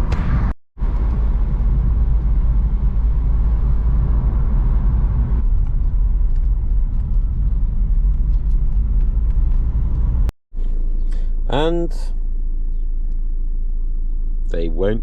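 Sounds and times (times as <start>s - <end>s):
road and engine rumble: 0.0s - 15.0s.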